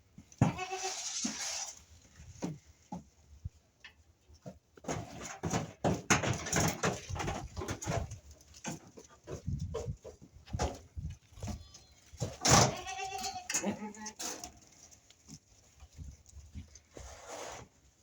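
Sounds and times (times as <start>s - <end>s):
rustling: 3.6s - 18.0s
goats clattering knocks: 4.4s - 16.8s.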